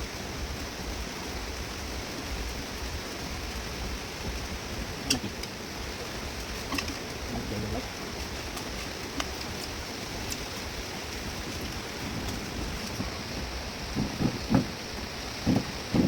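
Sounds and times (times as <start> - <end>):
rain hissing: 0.0 - 16.0
short low bumps: 4.2 - 16.0.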